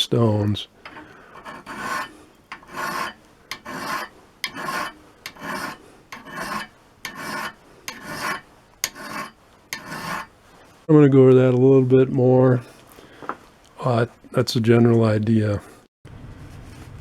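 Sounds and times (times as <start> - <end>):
sharpening stone scraping steel: 1.4 - 10.3.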